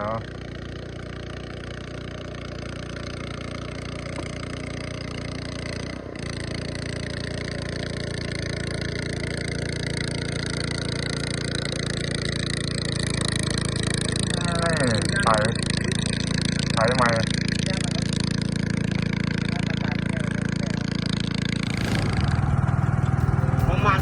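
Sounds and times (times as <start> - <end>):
boat engine running: 21.4 - 24.0.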